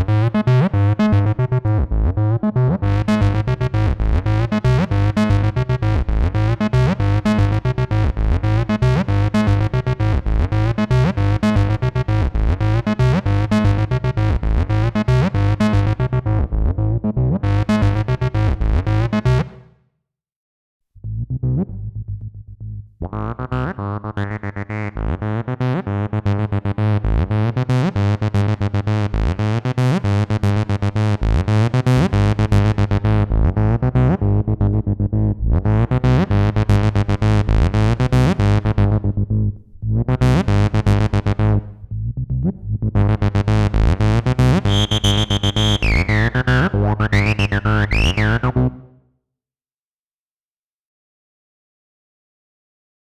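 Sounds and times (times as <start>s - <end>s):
acid synth bassline: 0.0s - 19.4s, 23.1s - 48.8s
high whistling glides: 44.7s - 48.4s.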